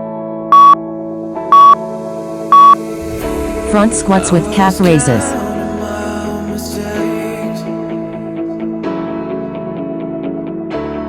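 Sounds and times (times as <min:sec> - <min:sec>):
synthesizer background music: 0:00.0 - 0:11.0
short high electronic beeps: 0:00.6 - 0:00.8, 0:01.5 - 0:01.8, 0:02.5 - 0:02.8.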